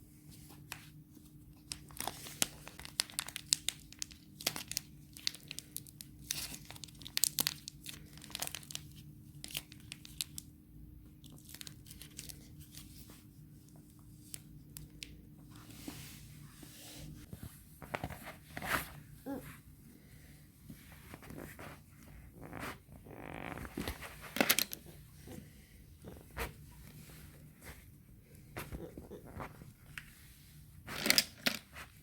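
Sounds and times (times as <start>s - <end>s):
faint steady hum: 0.0s - 32.0s
crinkling and tearing of packaging: 1.7s - 10.4s, 11.2s - 12.8s.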